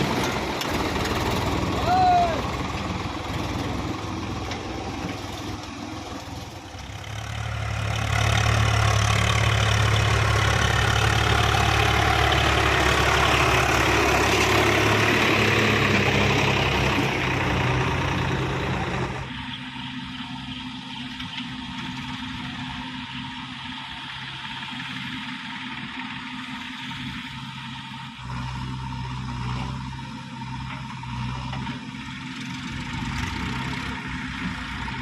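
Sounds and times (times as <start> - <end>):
diesel engine revving: 0.0 - 35.0.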